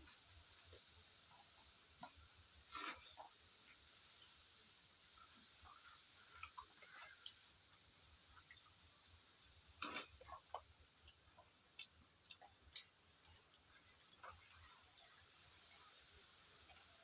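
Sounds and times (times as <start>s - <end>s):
eating clicks and smacks: 9.8s - 15.2s.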